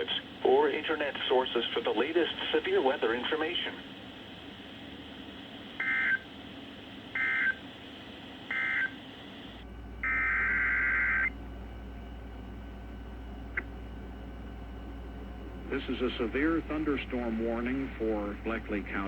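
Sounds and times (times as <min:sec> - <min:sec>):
faint low hum: 0:00.0 - 0:19.0
buzzy digital data warble: 0:08.5 - 0:11.3.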